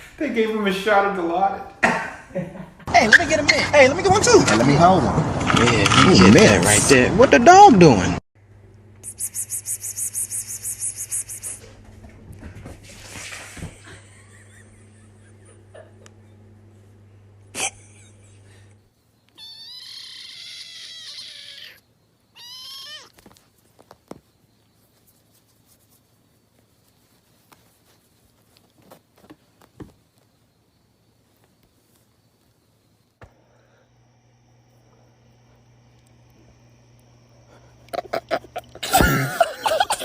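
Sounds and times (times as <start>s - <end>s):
low hum: 8.4s - 18.9s, 33.3s - 40.0s
cat meowing: 19.4s - 21.8s, 22.4s - 23.2s.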